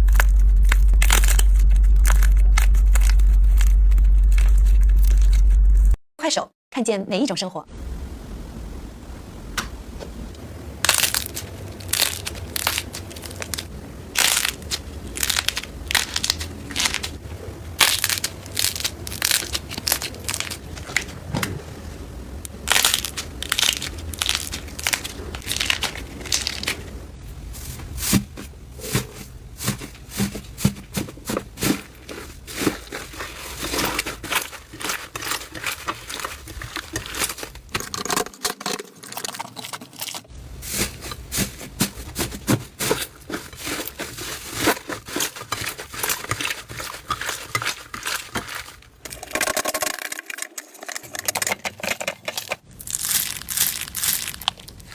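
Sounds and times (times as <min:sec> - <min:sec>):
slime crackling and popping: 0:00.0 - 0:05.5, 0:10.8 - 0:17.2, 0:17.8 - 0:21.1, 0:22.5 - 0:26.8, 0:31.6 - 0:40.3, 0:43.3 - 0:54.9.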